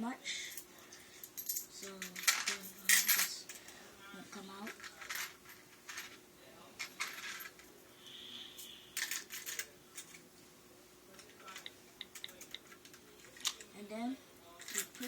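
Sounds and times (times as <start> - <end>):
coins clattering on plastic: 1.3 - 3.7, 4.3 - 6.2, 6.8 - 7.8, 8.6 - 10.2, 11.2 - 13.7, 14.6 - 15.0.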